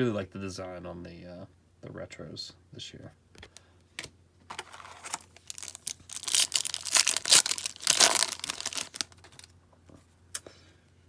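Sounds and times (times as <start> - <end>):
wrapper tearing and crinkling: 4.5 - 9.5.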